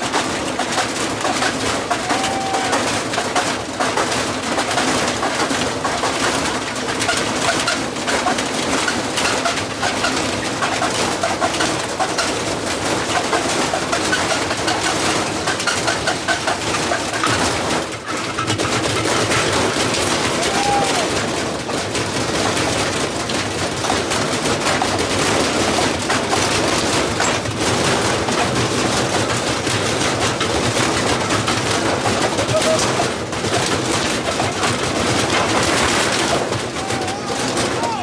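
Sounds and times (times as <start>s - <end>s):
metal rattling in washing machine drum: 0.0s - 38.0s.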